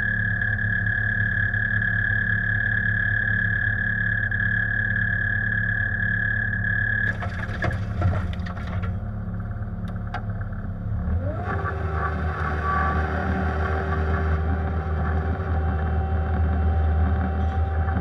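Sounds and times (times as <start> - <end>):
diesel engine whining: 0.0 - 18.0
machine clanks and knocks: 7.1 - 9.0.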